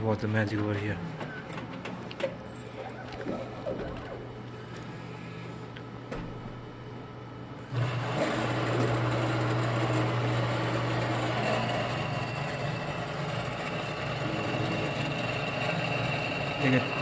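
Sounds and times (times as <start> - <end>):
coffee grinder motor humming: 7.6 - 17.0.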